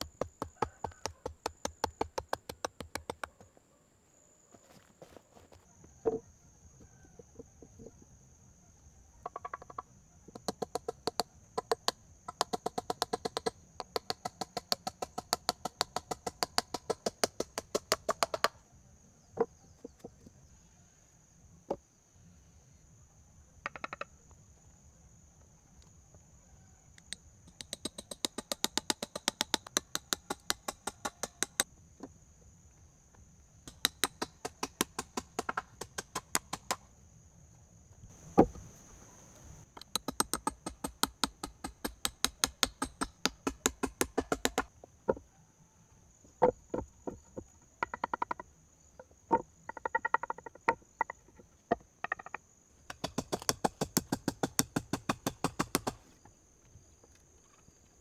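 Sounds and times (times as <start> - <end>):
quick sharp knocks: 40.0 - 44.7.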